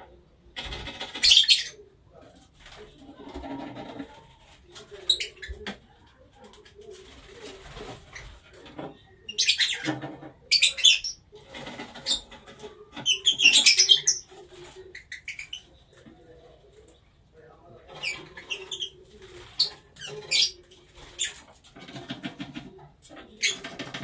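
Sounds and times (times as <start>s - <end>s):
background bird chatter: 0.0s - 24.0s
parrots chirping shrilly: 13.1s - 14.2s.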